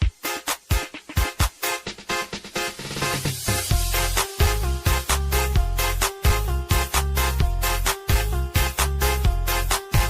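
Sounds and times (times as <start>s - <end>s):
drum beat: 0.0s - 9.4s
dance music: 0.0s - 10.0s
deep bass line: 3.7s - 10.0s.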